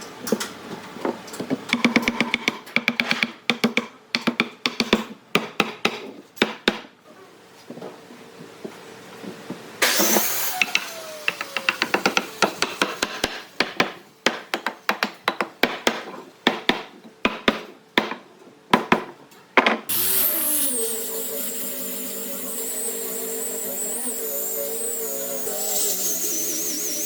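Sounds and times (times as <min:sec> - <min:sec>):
power tool whining: 0:19.9 - 0:27.0.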